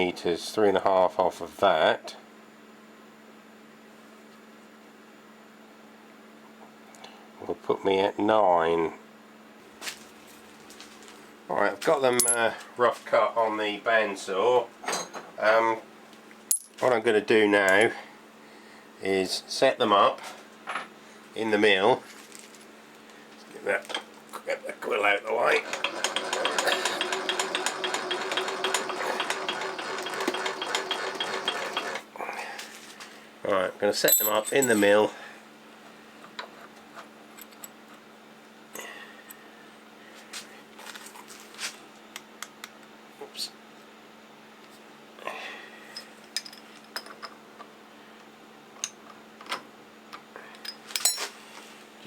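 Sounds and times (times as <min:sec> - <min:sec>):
faint steady hum: 0:00.0 - 0:25.6
metal parts clicking and clinking: 0:12.2 - 0:12.4, 0:16.5 - 0:16.8, 0:34.0 - 0:35.0, 0:50.6 - 0:51.3
ratchet-like clicks: 0:25.7 - 0:32.0.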